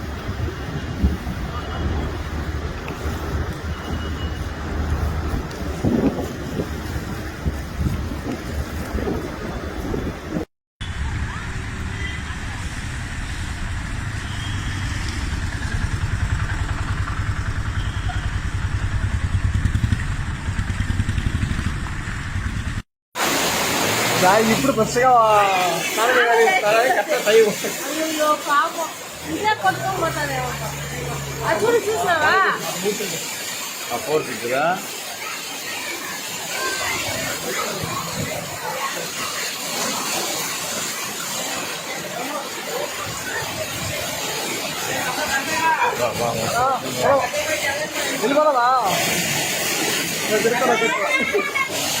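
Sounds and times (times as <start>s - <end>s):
floodwater rushing: 0.0s - 52.0s
vehicle engine running: 10.9s - 22.8s, 29.0s - 32.6s
noisy hiss: 23.2s - 52.0s
faint voices: 25.4s - 52.0s.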